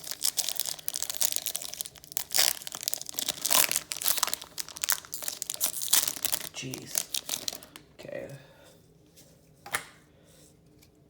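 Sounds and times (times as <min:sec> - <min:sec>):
foil wrapper tearing and crinkling: 0:00.0 - 0:07.8.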